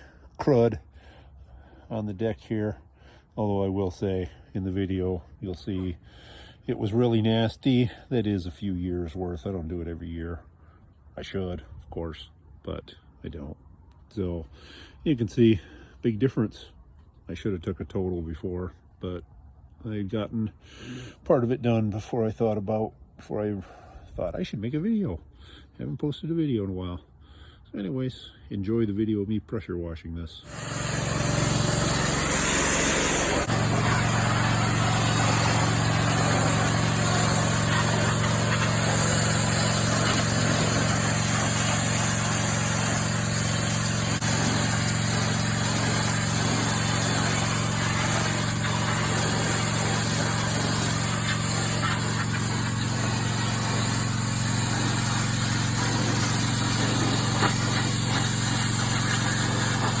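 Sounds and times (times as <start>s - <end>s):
pressure washer motor droning: 30.5s - 60.0s
water jet hissing: 30.5s - 60.0s.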